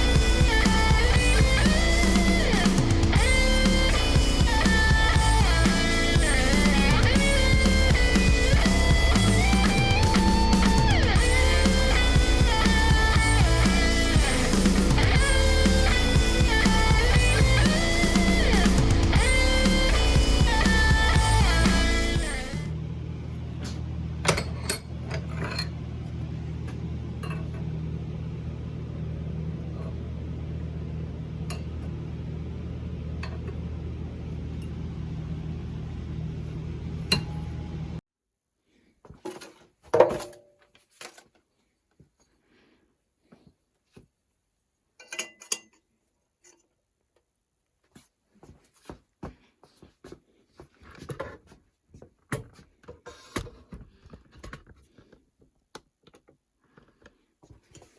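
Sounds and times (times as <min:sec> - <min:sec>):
machine humming: 0:00.0 - 0:38.0
metal tools clinking: 0:24.3 - 0:25.8, 0:45.0 - 0:45.8.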